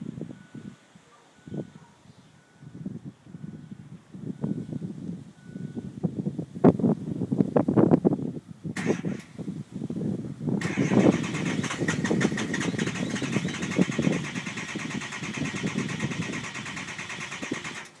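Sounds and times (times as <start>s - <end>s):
truck engine cranking: 8.8s - 9.4s, 10.6s - 18.0s.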